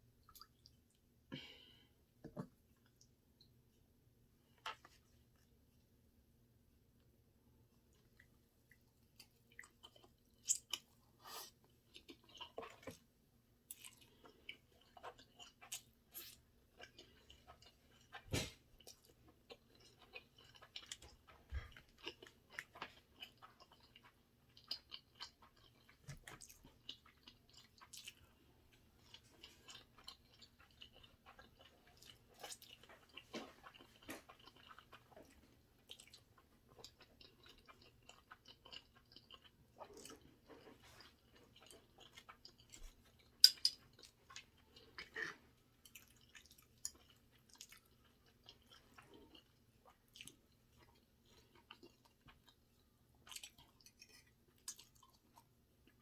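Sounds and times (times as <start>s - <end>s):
wet chewing and mouth smacks: 29.0s - 56.0s.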